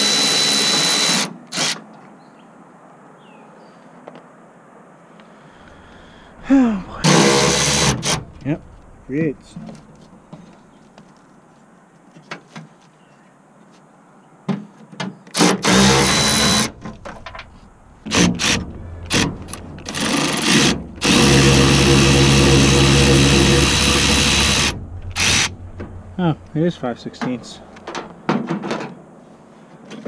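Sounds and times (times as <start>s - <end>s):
power drill spinning: 0.0s - 1.8s, 6.9s - 8.9s, 15.4s - 25.6s.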